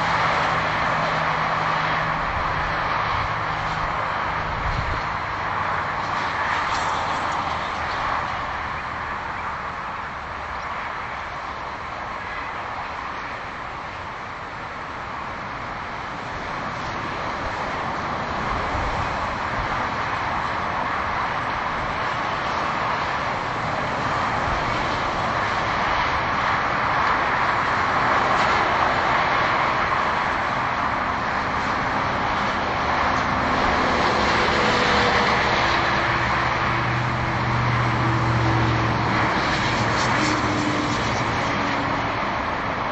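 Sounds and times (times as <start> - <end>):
highway traffic rushing: 0.0 - 42.9
low engine hum with tones: 0.0 - 42.9.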